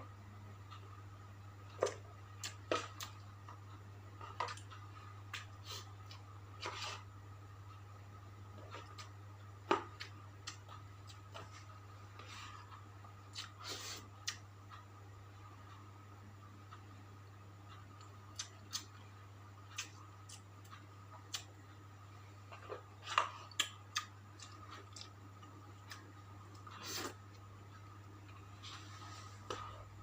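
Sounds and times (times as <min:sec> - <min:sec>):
steady low hum: 0:00.0 - 0:30.0
chewing clicks and smacks: 0:18.0 - 0:19.0, 0:19.7 - 0:21.5, 0:22.6 - 0:26.8.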